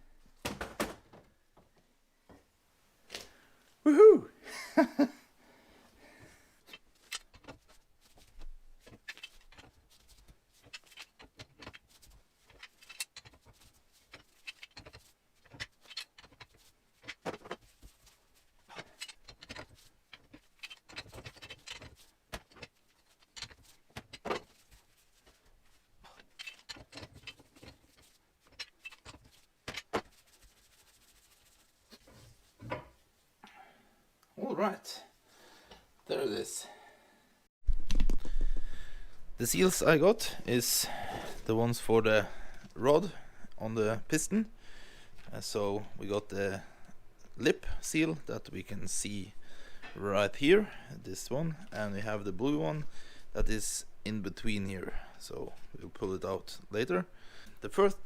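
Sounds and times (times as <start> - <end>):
metal parts clinking and knocking: 6.7 - 7.8, 8.4 - 25.4, 26.0 - 30.2.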